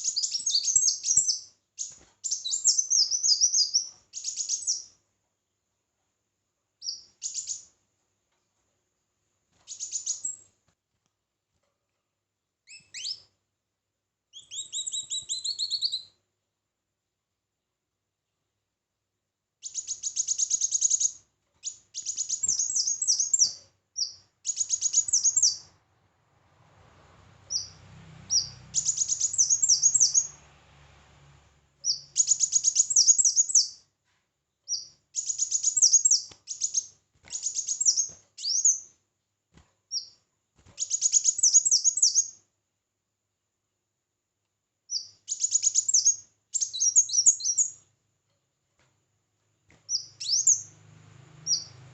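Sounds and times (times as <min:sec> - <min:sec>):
small songbird twittering: 0:00.0 - 0:05.0, 0:06.8 - 0:07.7, 0:09.7 - 0:10.5, 0:12.6 - 0:13.3, 0:14.3 - 0:16.2, 0:19.6 - 0:25.7, 0:27.5 - 0:30.4, 0:31.8 - 0:33.8, 0:34.7 - 0:38.9, 0:39.9 - 0:40.2, 0:40.8 - 0:42.4, 0:44.9 - 0:47.8, 0:49.9 - 0:50.7, 0:51.4 - 0:51.8
faint low rumble: 0:25.6 - 0:32.2.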